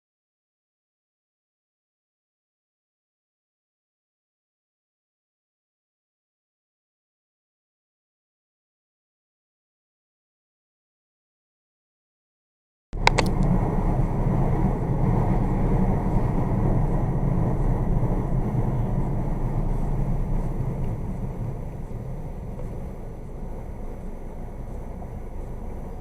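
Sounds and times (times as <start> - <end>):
clicks: 13.0 - 13.6
moving car rumble: 13.0 - 26.0.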